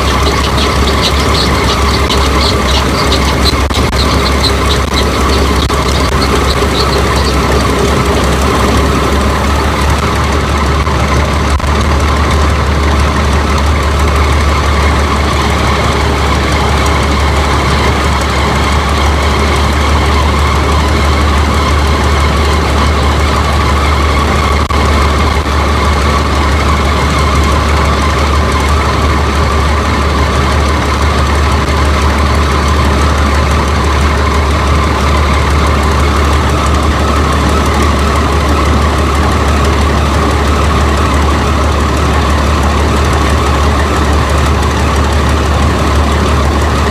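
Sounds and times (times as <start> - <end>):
combine harvester engine running: 0.0 - 46.9.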